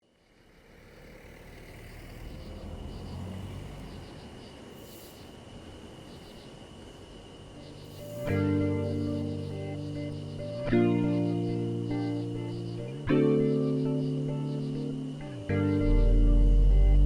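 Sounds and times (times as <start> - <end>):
thin steady high tone: 0.2 - 17.0
guitar music: 7.7 - 17.0
low rumble: 15.8 - 17.0.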